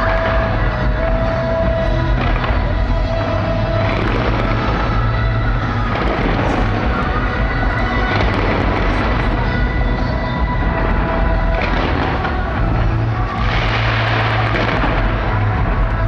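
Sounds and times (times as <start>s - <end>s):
fireworks bangs and crackling: 0.0s - 16.0s
music playing: 0.0s - 16.0s.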